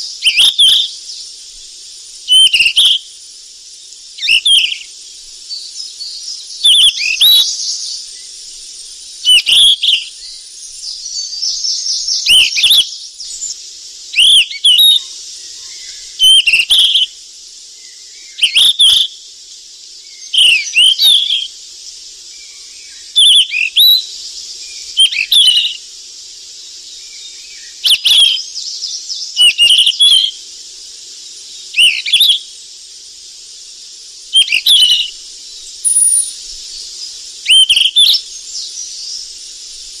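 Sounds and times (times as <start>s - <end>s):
steady high hiss: 0.0s - 40.0s
bird singing curling calls: 2.2s - 3.2s, 4.1s - 17.1s, 20.0s - 21.5s, 22.4s - 25.8s, 26.9s - 30.4s, 31.6s - 32.5s, 34.3s - 39.4s.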